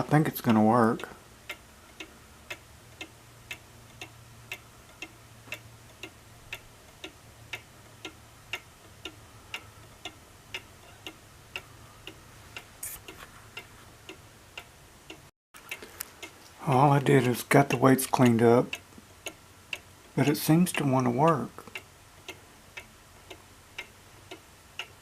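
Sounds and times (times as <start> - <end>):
cuckoo clock ticking: 0.0 - 25.0
brief hiss: 12.8 - 13.1.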